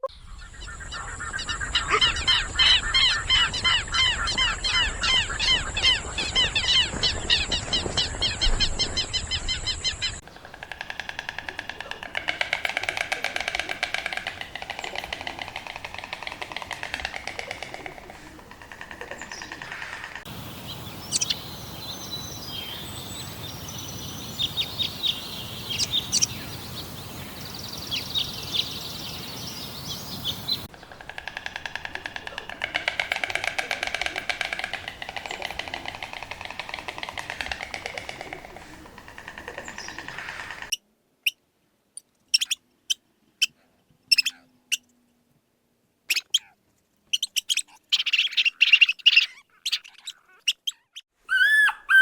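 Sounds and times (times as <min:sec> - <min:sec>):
small birds chirping: 0:09.0 - 0:40.8, 0:42.3 - 0:44.9, 0:46.1 - 0:52.0
steady hiss: 0:10.2 - 0:40.7.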